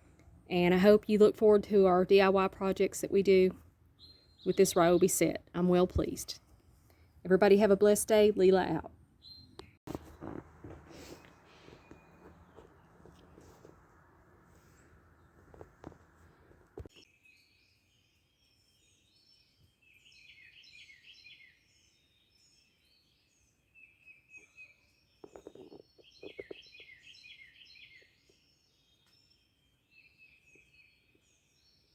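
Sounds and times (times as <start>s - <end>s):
faint birdsong chirps and trills: 2.2s - 5.4s, 9.1s - 10.4s, 11.0s - 13.8s, 14.4s - 31.9s.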